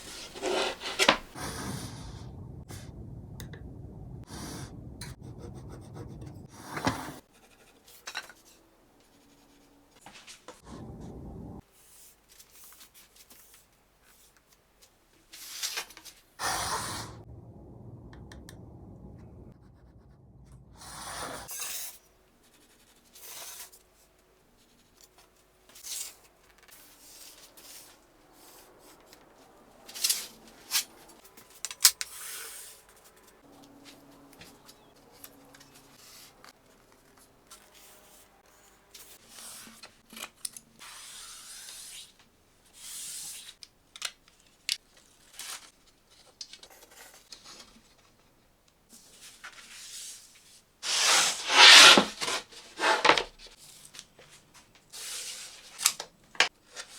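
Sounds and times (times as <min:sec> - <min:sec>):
rubbing and scratching on material: 0:00.0 - 0:01.4, 0:48.9 - 0:56.9
scraping sweeps: 0:00.0 - 0:03.0, 0:50.8 - 0:53.2.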